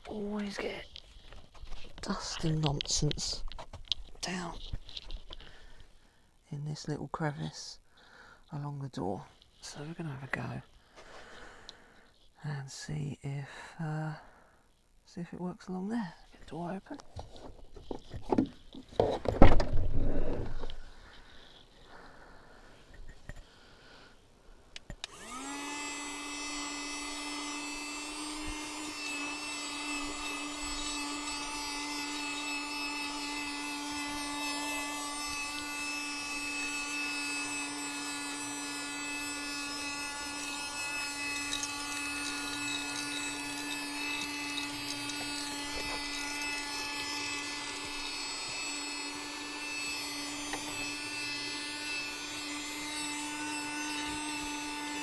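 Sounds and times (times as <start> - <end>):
handheld vacuum cleaner whine: 24.9 - 55.0.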